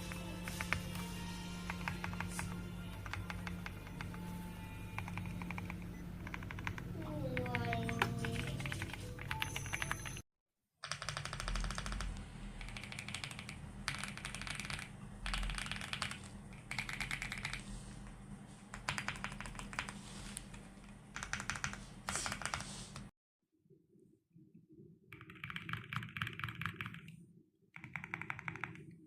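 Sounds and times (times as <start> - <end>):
mechanical keyboard clacks: 1.7 - 4.2, 4.9 - 10.2, 10.8 - 17.6, 18.8 - 20.0, 21.2 - 22.6, 27.8 - 28.9.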